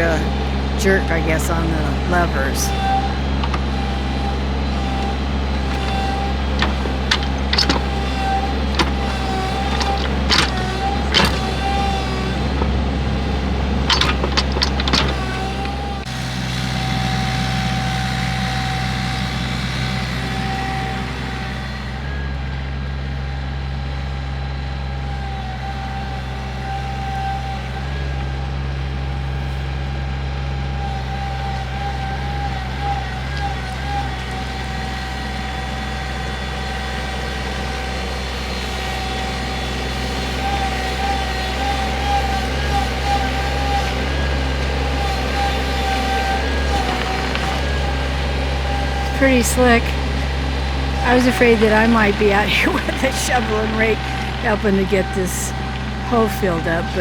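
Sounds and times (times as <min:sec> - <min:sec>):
high hydraulic whine: 0:00.0 - 0:21.4
excavator engine running: 0:00.0 - 0:57.0.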